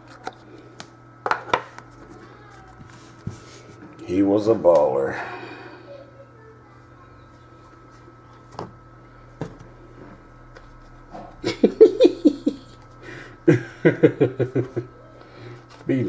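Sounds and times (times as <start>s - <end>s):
man laughing: 11.4s - 15.0s.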